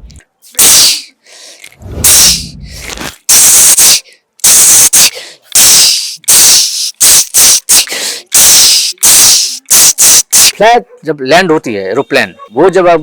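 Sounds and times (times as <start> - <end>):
vocal mimicry of ankle bells: 3.3 - 10.6.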